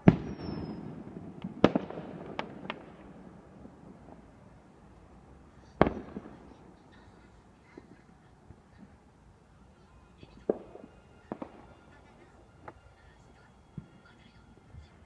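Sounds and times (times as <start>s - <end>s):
fireworks bangs and pops: 0.0s - 9.1s, 10.4s - 12.9s.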